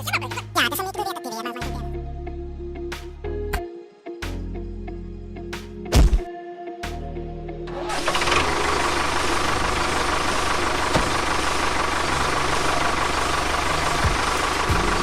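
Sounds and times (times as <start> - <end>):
small motor rattling: 7.9 - 15.0.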